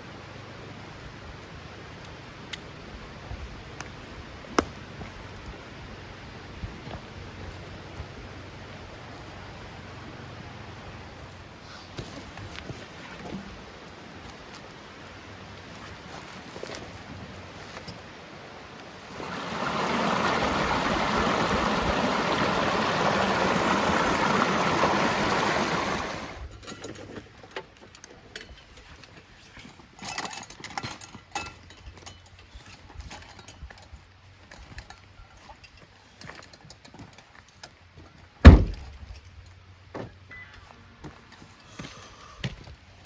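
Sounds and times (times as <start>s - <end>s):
rushing stream water: 13.6s - 26.5s
heavy thud: 38.4s - 39.0s.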